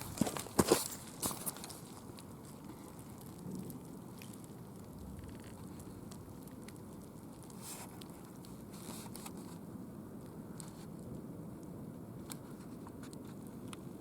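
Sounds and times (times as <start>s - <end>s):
footsteps crunching on dry leaves: 0.0s - 2.1s
low rumble: 3.4s - 7.2s.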